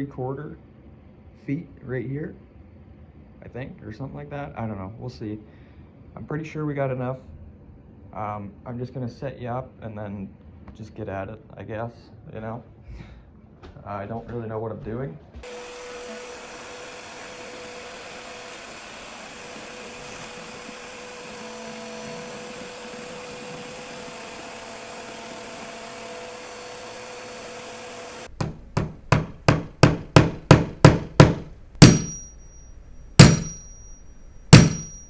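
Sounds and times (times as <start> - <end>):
hammer driving nail: 15.4 - 35.0.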